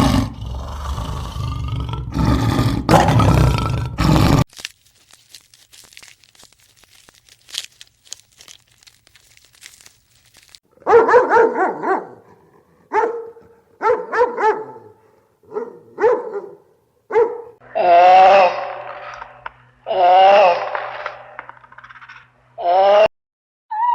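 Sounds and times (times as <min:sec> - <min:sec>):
dog barking: 0:10.8 - 0:17.6.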